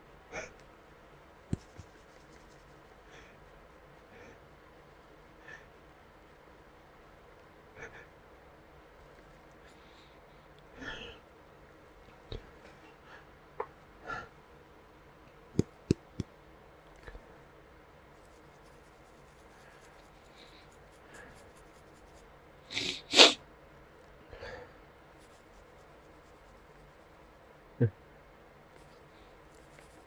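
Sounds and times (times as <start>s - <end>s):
man sneezing: 22.7s - 23.4s
sharp breath: 22.7s - 23.4s.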